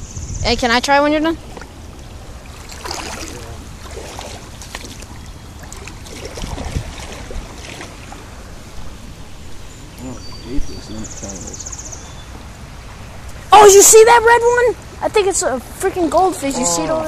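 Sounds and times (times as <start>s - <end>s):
wind rumbling on microphone: 0.0s - 13.6s
flowing creek water: 0.7s - 17.0s.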